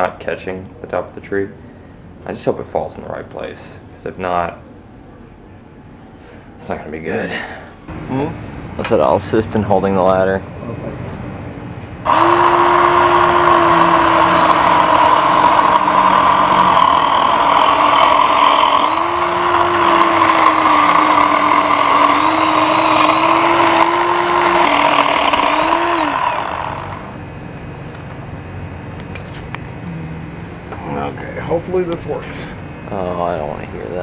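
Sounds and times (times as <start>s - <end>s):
electric chainsaw cutting tree: 12.1s - 27.2s.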